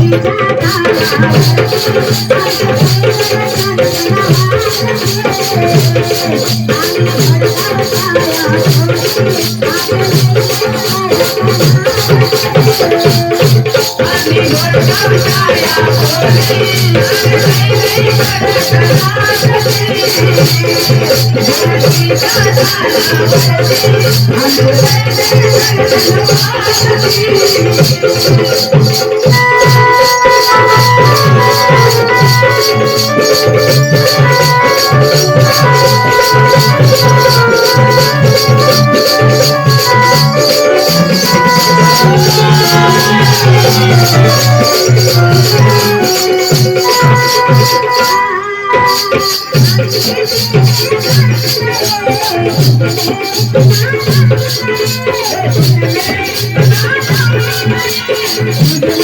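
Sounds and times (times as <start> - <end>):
drum beat: 0.0 - 59.0
folk dance music: 0.0 - 59.0
high rattling rhythm: 0.0 - 59.0
melody of held notes: 29.4 - 48.7.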